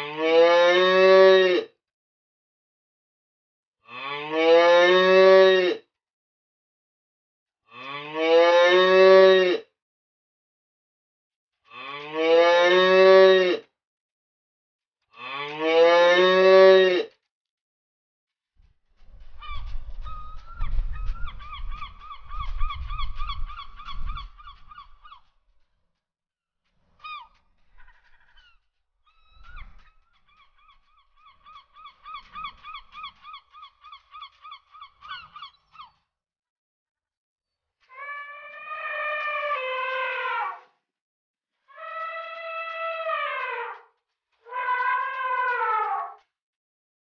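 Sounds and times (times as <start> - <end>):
long low animal calls: 37.9 - 40.7, 41.7 - 43.9, 44.5 - 46.2
quick high animal calls: 37.9 - 40.7, 41.7 - 43.9, 44.5 - 46.2.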